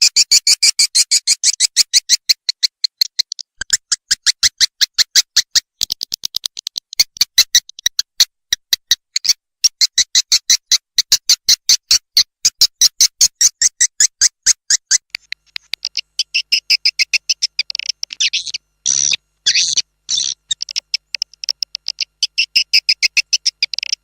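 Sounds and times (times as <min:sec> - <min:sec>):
swiftlet call sharp chirps: 0:15.8 - 0:24.0.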